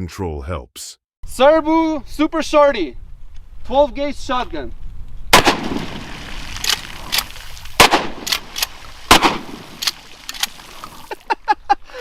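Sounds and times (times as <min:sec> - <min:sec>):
shotgun shots with ringing tail: 0:05.4 - 0:06.1, 0:07.8 - 0:09.8.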